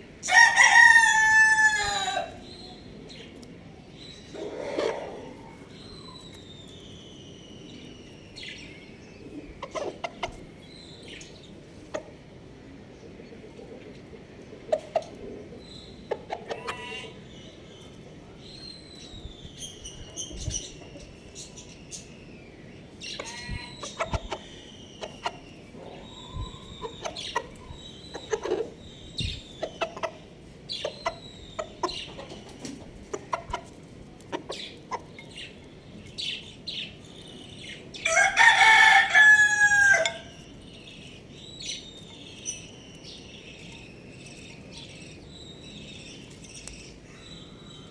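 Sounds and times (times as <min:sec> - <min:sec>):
rooster crowing: 0:00.2 - 0:02.4, 0:38.0 - 0:40.4
chickens clucking: 0:00.3 - 0:06.6, 0:08.3 - 0:18.2, 0:22.8 - 0:45.3.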